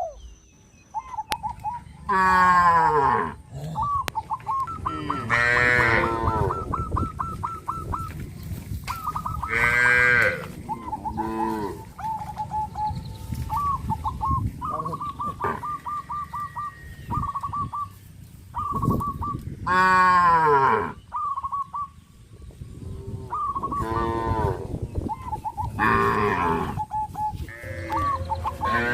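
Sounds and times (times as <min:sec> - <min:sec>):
birds calling: 0:00.0 - 0:28.9
cattle mooing: 0:02.0 - 0:03.9, 0:04.8 - 0:06.7, 0:09.5 - 0:12.0, 0:14.8 - 0:17.2, 0:19.6 - 0:21.0, 0:25.8 - 0:26.8, 0:27.5 - 0:28.9.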